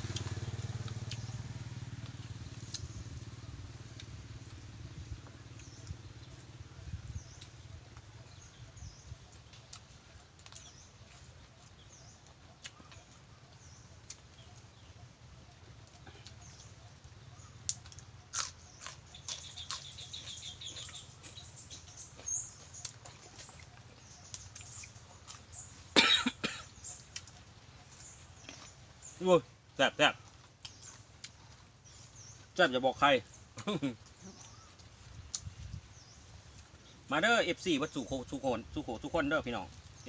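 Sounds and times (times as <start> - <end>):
bird chirping trill: 16.4 - 29.3
person eating: 18.3 - 21.4
person coughing: 26.0 - 26.7.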